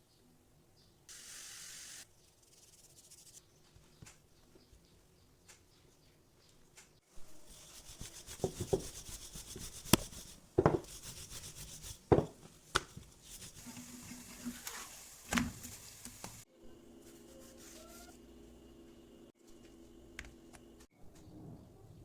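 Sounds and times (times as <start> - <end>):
rubbing and scraping: 7.2 - 15.0
dull thumps: 10.6 - 11.0, 12.1 - 13.1.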